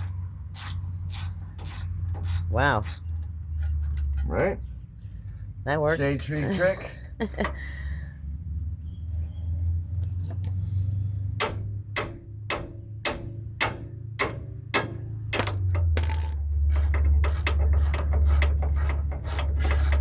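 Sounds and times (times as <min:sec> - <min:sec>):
ratchet wrench clicking: 0:00.0 - 0:03.1, 0:15.4 - 0:20.0.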